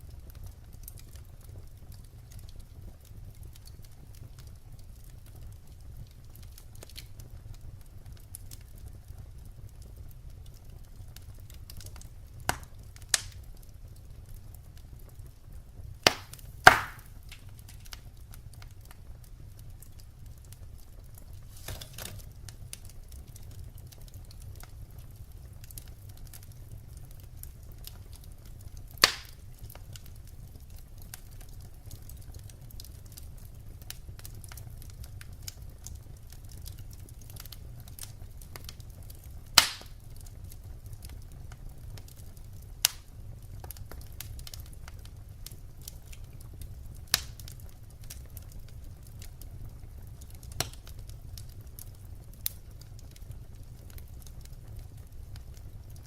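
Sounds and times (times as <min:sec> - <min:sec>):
wood fire crackling: 0:00.0 - 0:56.0
sharp pops of fire: 0:10.6 - 0:14.0, 0:15.0 - 0:19.2, 0:19.8 - 0:48.3, 0:50.2 - 0:56.0.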